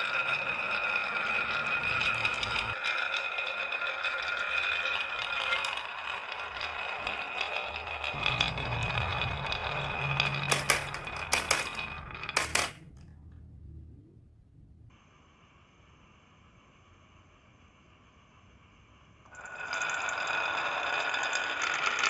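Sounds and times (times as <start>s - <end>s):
marbles rolling down a track: 0.0s - 13.2s, 19.4s - 22.0s
marbles clacking: 0.0s - 13.3s.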